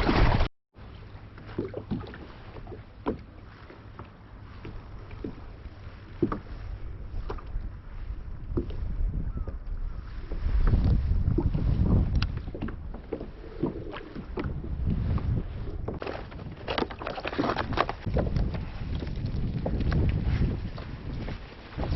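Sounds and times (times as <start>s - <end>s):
water slapping against kayak hull: 0.0s - 0.5s, 8.4s - 21.9s
low wind rumble: 0.0s - 21.9s.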